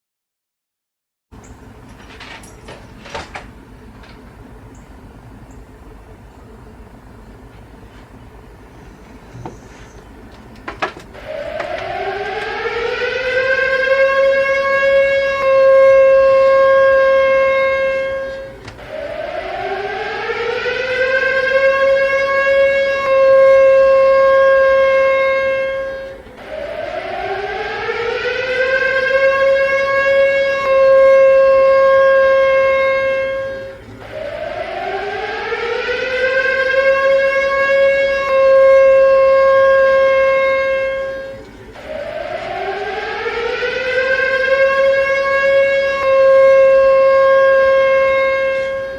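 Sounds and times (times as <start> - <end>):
siren wailing: 10.8 - 48.9.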